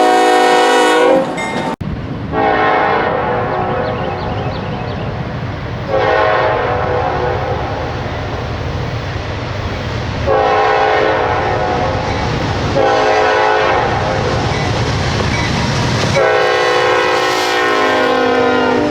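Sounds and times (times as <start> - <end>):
locomotive air horn blasts: 0.0 - 1.4, 2.3 - 3.9, 5.9 - 7.8, 10.3 - 12.1, 12.7 - 14.4, 16.2 - 18.9
train rumble: 0.0 - 18.9.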